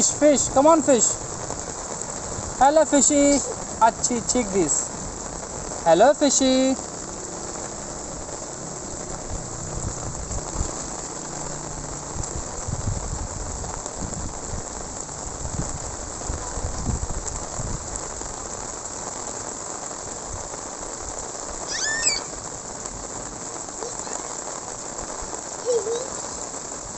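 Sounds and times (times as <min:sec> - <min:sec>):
steady rain falling: 0:00.0 - 0:26.9
brief high-pitched call: 0:21.7 - 0:22.3.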